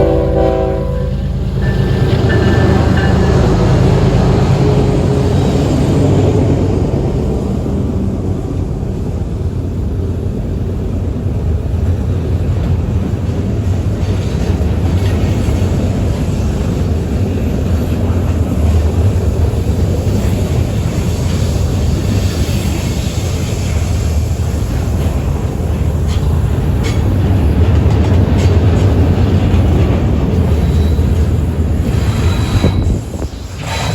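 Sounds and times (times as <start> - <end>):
train horn: 0.0 - 5.4
diesel train rumbling: 0.0 - 33.9.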